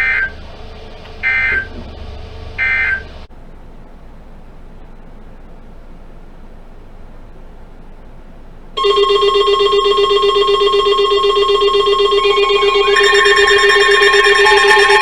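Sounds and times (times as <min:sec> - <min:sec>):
second alert tone: 0:08.8 - 0:15.0
steady alert tone: 0:08.8 - 0:15.0.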